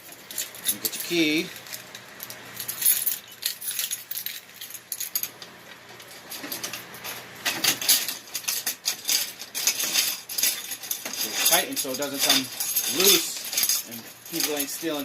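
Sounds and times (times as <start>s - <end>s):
keys jangling: 0.0s - 5.4s, 6.0s - 15.0s
key clinking in a lock: 2.6s - 5.4s.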